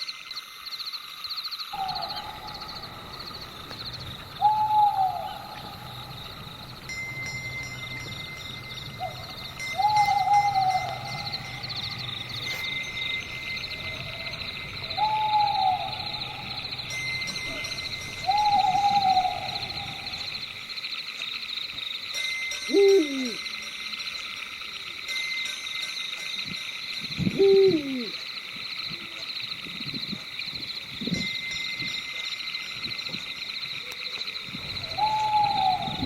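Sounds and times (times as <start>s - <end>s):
crickets chirring: 0.0s - 36.0s
low drone: 1.7s - 20.7s, 34.5s - 36.0s
owl hooting: 1.8s - 20.6s, 22.7s - 23.4s, 27.2s - 28.2s, 34.6s - 36.0s.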